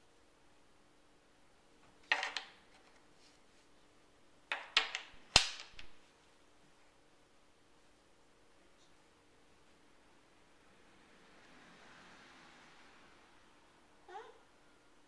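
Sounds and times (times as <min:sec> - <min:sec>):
puzzle pieces knocking: 0:02.0 - 0:02.6, 0:04.5 - 0:06.0.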